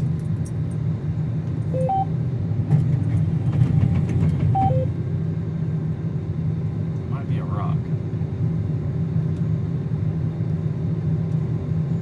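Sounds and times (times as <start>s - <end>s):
combine harvester droning: 1.0s - 5.6s
two-note electronic beeps: 1.8s - 2.1s.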